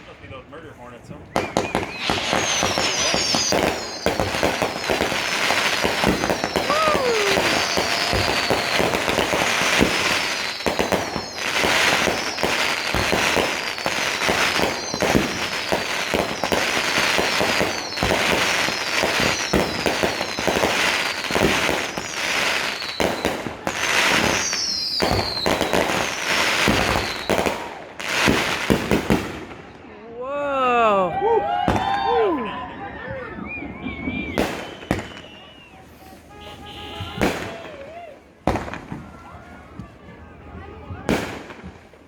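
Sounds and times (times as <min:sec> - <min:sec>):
fireworks bangs and crackling: 0:00.0 - 0:29.9, 0:31.4 - 0:42.0
falling firework whistles: 0:01.3 - 0:27.8, 0:31.5 - 0:36.3.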